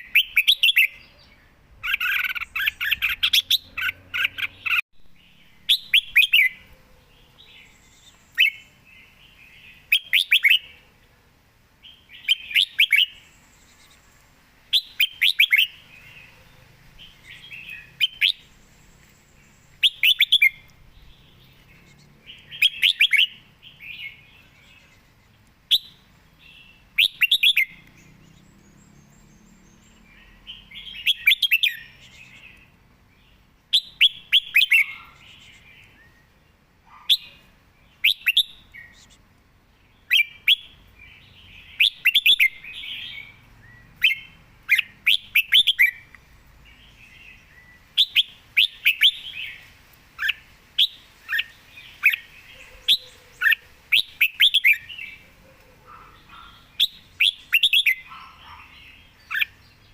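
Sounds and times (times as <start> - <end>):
bird singing whistled phrases: 0.0 - 1.0, 5.4 - 6.6, 7.6 - 8.7, 9.8 - 10.7, 11.9 - 13.2, 14.7 - 15.8, 17.3 - 18.5, 19.8 - 20.7, 22.4 - 24.2, 25.7 - 27.8, 30.5 - 32.5, 33.7 - 36.3, 38.0 - 39.1, 40.1 - 40.8, 41.6 - 46.0, 47.5 - 49.6, 50.2 - 55.2, 56.3 - 58.6.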